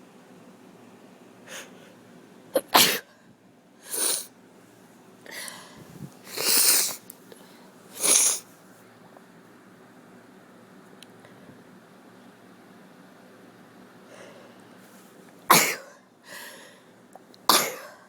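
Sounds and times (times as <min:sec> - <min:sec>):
person sneezing: 0:02.6 - 0:03.1, 0:03.9 - 0:04.3, 0:06.3 - 0:07.0, 0:08.0 - 0:08.4, 0:15.5 - 0:16.0, 0:17.5 - 0:18.0.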